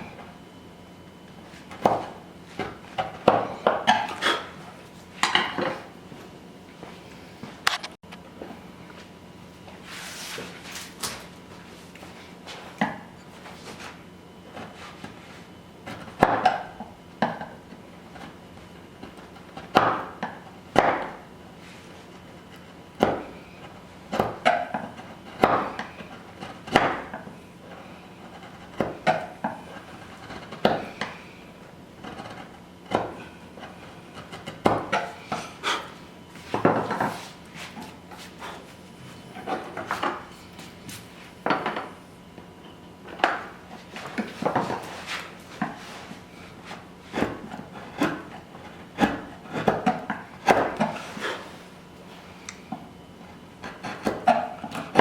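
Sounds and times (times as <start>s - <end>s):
wooden mallet striking chisel: 19.7s - 21.2s, 24.1s - 27.2s, 49.0s - 51.0s.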